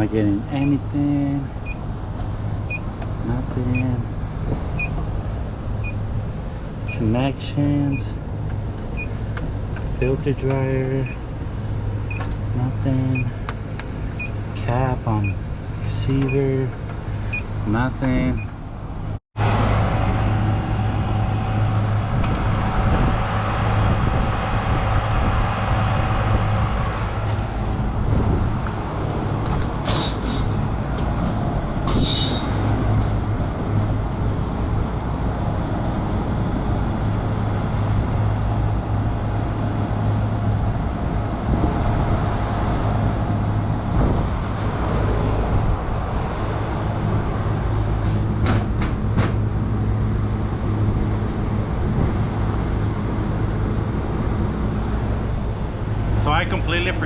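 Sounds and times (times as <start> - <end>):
machinery humming: 19.4 - 31.8.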